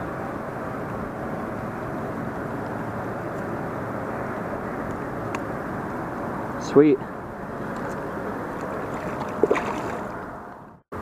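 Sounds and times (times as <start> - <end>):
river water rushing: 7.2 - 10.6.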